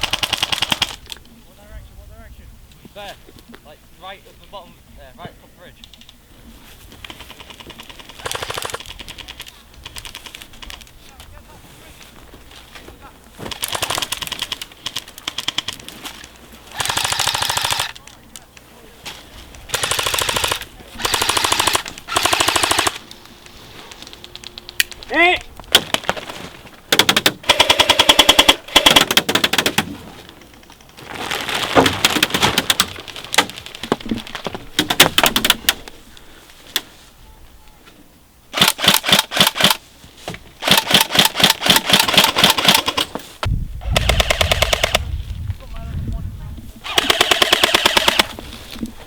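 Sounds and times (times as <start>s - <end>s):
airsoft guns firing bursts: 0.0s - 1.0s, 7.1s - 10.7s, 13.5s - 15.9s, 16.7s - 18.0s, 19.7s - 23.1s, 26.9s - 29.8s, 38.5s - 39.8s, 40.6s - 43.1s, 43.8s - 45.0s, 46.8s - 48.4s.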